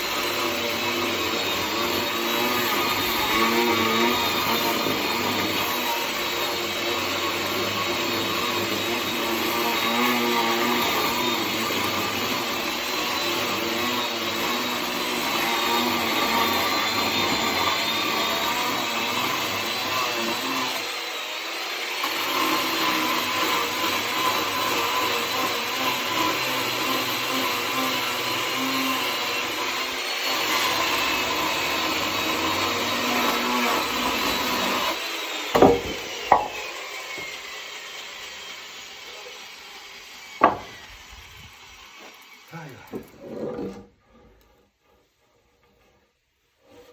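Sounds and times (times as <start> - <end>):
chainsaw cutting wood: 0.0 - 45.0
sharp knocks: 35.5 - 36.7, 40.4 - 40.9.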